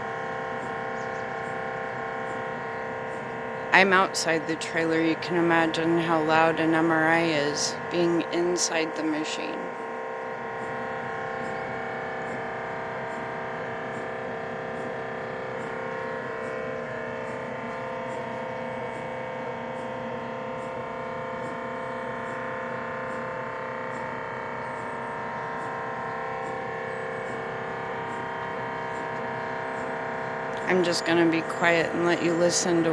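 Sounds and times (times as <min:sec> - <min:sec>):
mri scanner droning hum: 0:00.0 - 0:32.9.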